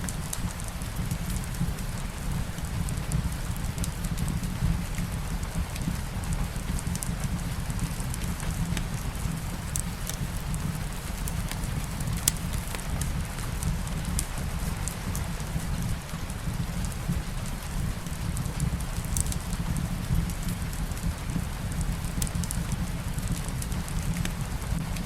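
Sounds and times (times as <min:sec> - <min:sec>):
steady light rain: 0:00.0 - 0:25.0
crackling fireplace: 0:08.0 - 0:13.6, 0:16.4 - 0:24.7.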